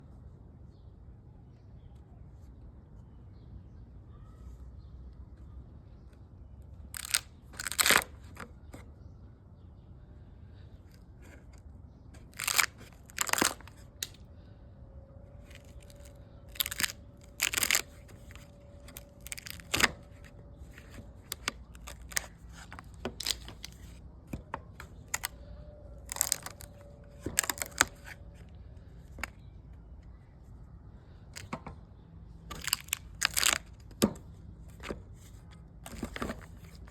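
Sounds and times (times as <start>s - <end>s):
faint steady hum: 0.0s - 36.9s
crunching tearing strokes on wood: 6.9s - 8.4s, 12.2s - 14.2s, 15.4s - 25.4s, 26.0s - 28.2s, 32.5s - 34.9s.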